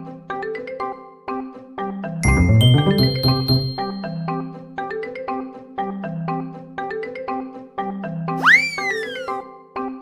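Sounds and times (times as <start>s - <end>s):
bouncy marimba tune with bass: 2.2s - 4.4s.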